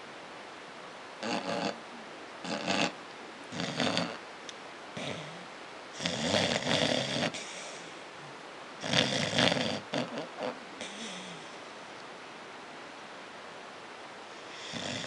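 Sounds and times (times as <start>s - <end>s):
dog snoring: 1.2s - 1.8s, 2.4s - 4.2s, 5.0s - 7.9s, 8.8s - 11.6s, 14.4s - 15.0s.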